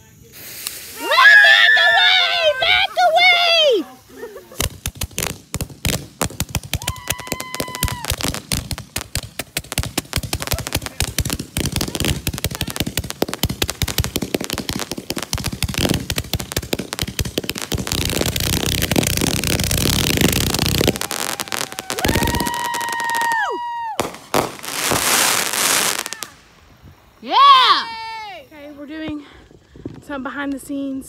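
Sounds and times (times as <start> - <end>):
fireworks cracking and banging: 4.5 - 26.8
high firework whistle: 6.1 - 11.0, 11.7 - 26.4.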